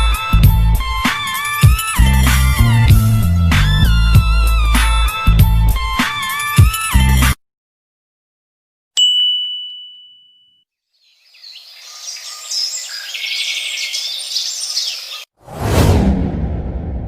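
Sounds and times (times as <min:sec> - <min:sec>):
bright ding: 0:09.0 - 0:10.6
birds chirping and twittering: 0:10.9 - 0:15.3.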